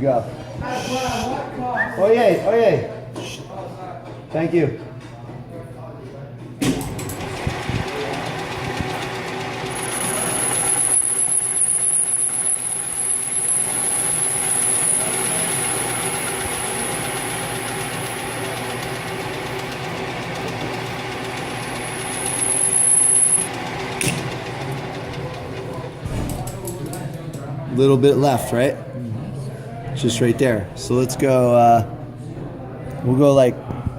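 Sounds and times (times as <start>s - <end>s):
metal lathe running: 6.9s - 26.0s
thin high cutting whine: 9.6s - 24.7s.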